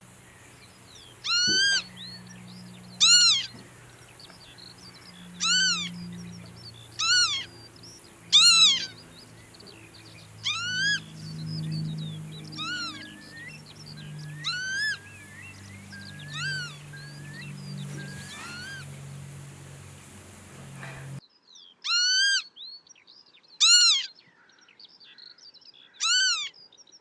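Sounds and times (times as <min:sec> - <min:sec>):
lapwing wheezy call: 0:01.2 - 0:02.2, 0:03.0 - 0:03.8, 0:05.4 - 0:06.0, 0:06.9 - 0:07.7, 0:08.3 - 0:09.1, 0:10.4 - 0:11.2, 0:12.5 - 0:21.2.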